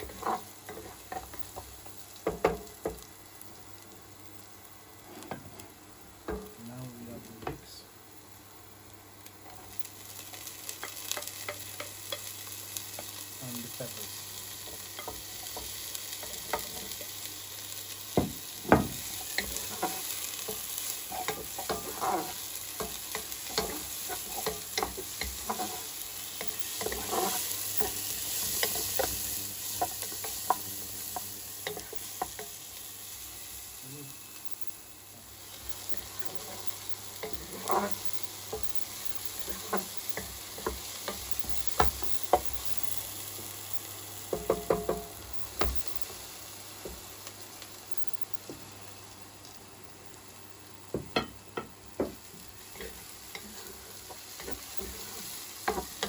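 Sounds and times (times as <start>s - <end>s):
vegetables sizzling in oil: 0.0s - 56.0s
utensil knocking and scraping a pan: 18.2s - 29.2s, 44.3s - 45.9s.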